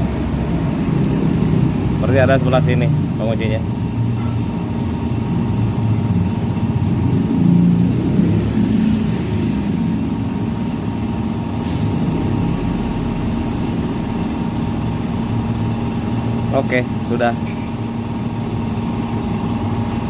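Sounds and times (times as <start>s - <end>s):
traffic rumble: 0.0s - 20.0s.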